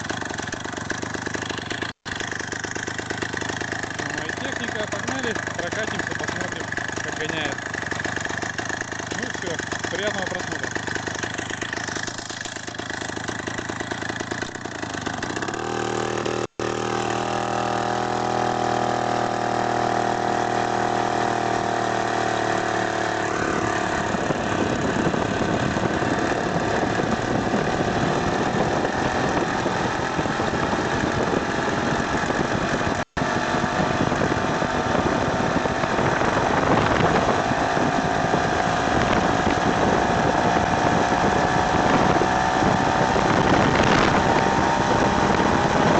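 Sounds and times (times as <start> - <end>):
two-stroke engine running: 0.0 - 45.9
steady rushing noise: 23.1 - 45.9.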